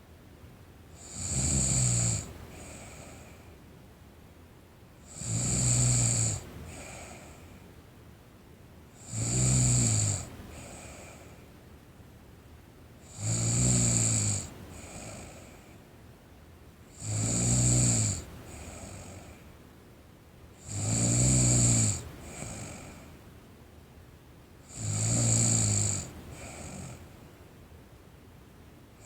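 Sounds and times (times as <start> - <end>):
soft breath: 2.3 - 3.6, 6.5 - 7.8, 10.3 - 11.6, 18.2 - 19.6, 22.2 - 23.3, 26.1 - 27.2
person snoring: 9.0 - 11.2, 20.6 - 23.1, 24.7 - 27.0.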